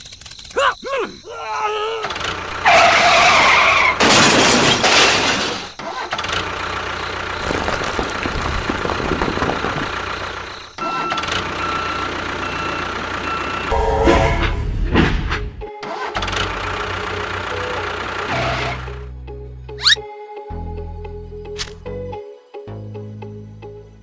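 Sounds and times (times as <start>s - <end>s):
thin steady whine: 13.7s - 15.6s.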